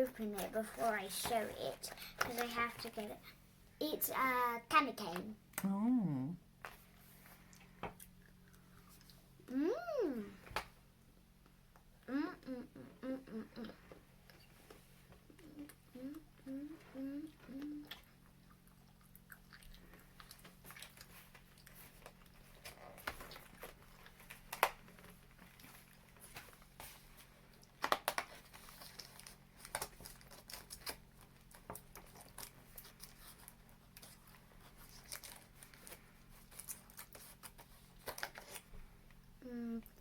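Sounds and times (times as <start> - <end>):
chewing and crunching sweets: 6.7 - 9.5, 11.4 - 40.0
wrappers crinkling: 27.8 - 38.7.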